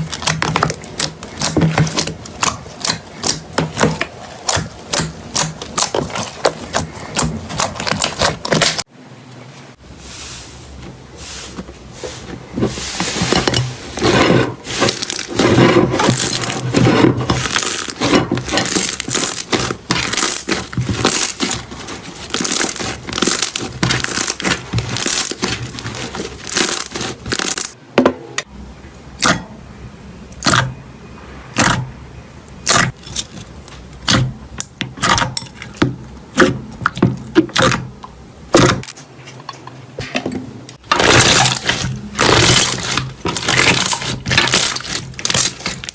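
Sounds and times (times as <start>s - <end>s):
slime crackling and popping: 0.0s - 8.8s, 14.7s - 27.8s, 40.9s - 45.9s.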